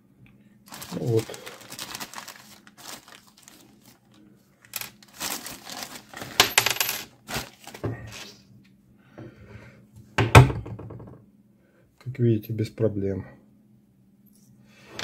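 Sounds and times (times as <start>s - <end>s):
plastic bag rustling: 0.7s - 8.4s.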